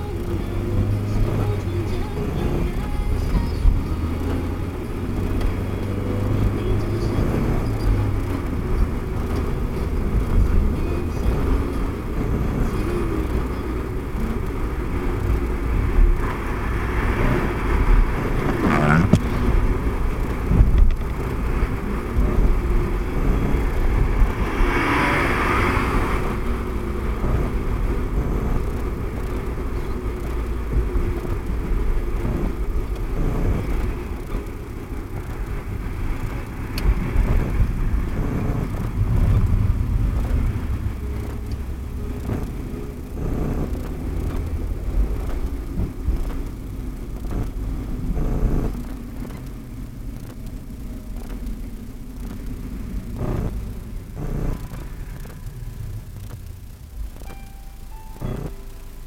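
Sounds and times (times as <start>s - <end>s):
road and engine rumble: 0.0s - 59.0s.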